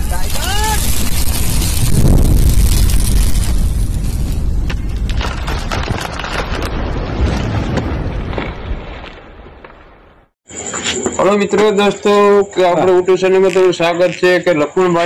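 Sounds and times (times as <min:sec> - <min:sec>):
deep rumbling boom: 0:00.0 - 0:10.1
crackles: 0:00.0 - 0:10.3, 0:13.0 - 0:14.5.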